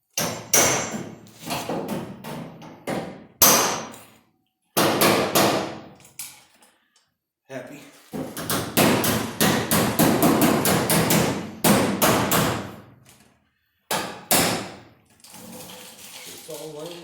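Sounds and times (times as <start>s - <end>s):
hammer striking sheet metal: 0.2s - 1.2s, 1.9s - 3.9s, 8.4s - 12.8s, 13.9s - 14.8s.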